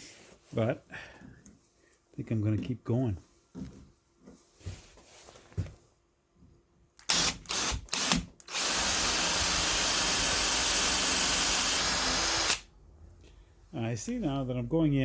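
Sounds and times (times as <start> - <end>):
power drill drilling: 7.0 - 12.7.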